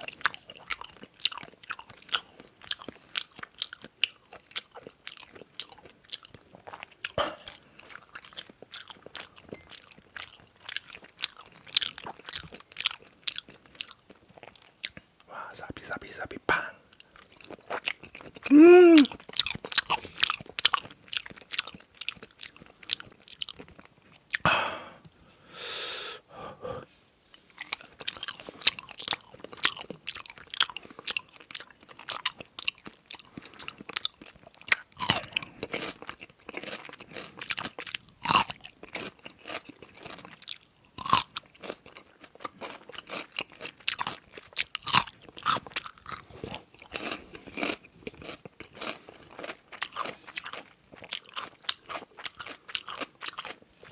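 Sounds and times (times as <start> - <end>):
person chewing food: 0.0 - 25.0, 27.4 - 53.9.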